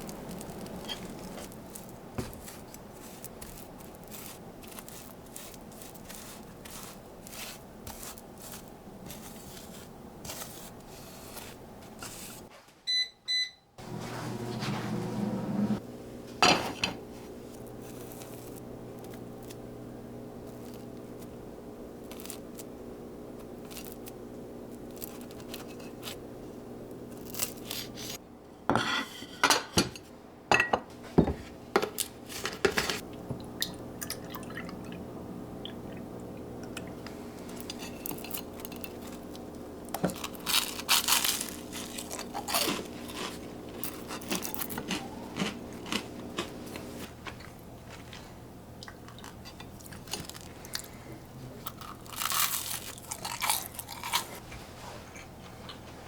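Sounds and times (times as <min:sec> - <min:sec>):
steady low hum: 0:13.8 - 0:28.9, 0:29.5 - 0:56.0.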